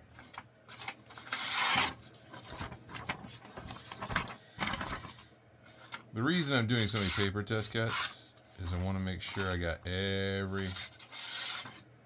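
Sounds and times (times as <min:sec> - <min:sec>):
paper rustle: 0:00.2 - 0:06.0.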